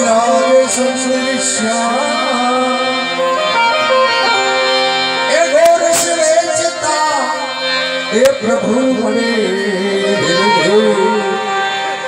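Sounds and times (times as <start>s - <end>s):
wavering folk melody: 0.0s - 12.0s
drum strokes: 5.7s - 6.4s.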